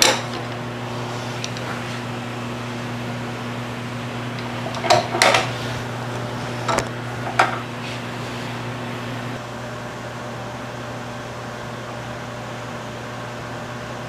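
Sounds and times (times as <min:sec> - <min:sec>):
metal parts clanking: 0:00.0 - 0:02.1, 0:04.4 - 0:07.7
electrical hum of shop equipment: 0:00.0 - 0:14.0.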